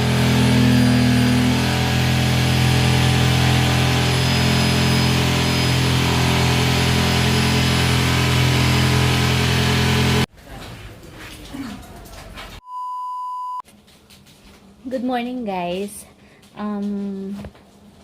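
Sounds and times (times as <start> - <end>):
power tool motor humming: 0.0 - 10.3.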